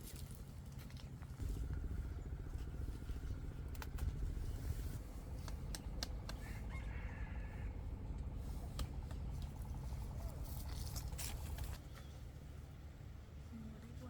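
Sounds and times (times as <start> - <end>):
low steady rumble: 0.0 - 14.0.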